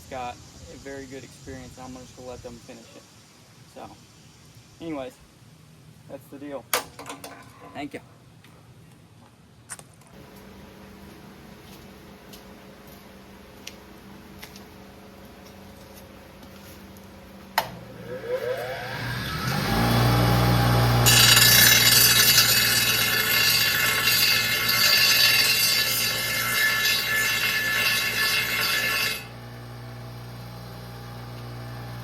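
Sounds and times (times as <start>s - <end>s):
angle grinder grinding steel: 17.7s - 32.0s.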